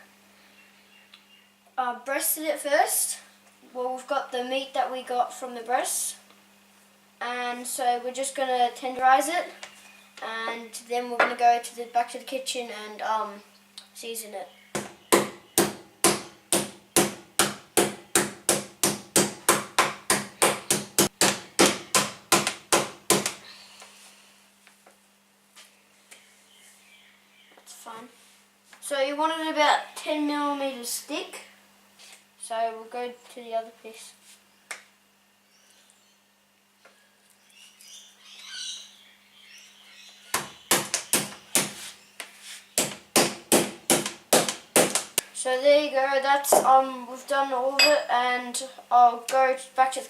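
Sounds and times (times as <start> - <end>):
mallet pounding meat: 14.8 - 23.4, 42.8 - 45.0
faint bird chirps: 35.4 - 42.8.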